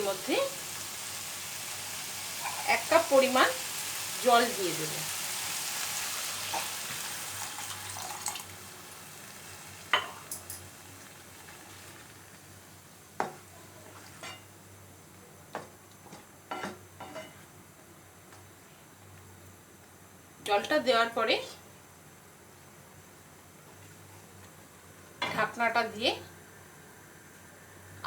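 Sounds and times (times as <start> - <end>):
chicken sizzling in a frying pan: 0.0 - 14.5
water hitting a hot pan: 5.8 - 12.4.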